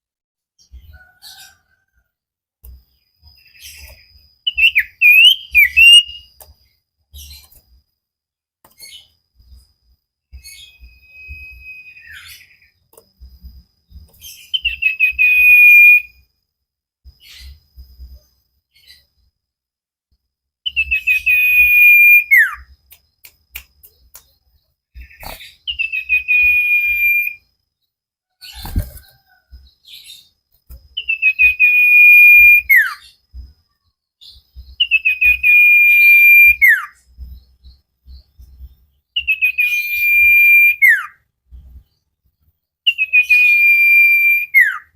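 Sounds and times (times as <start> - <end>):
bird whistling song: 3.3 - 6.4, 10.3 - 12.8, 13.9 - 16.3, 20.6 - 27.5, 30.9 - 41.9, 42.8 - 44.9.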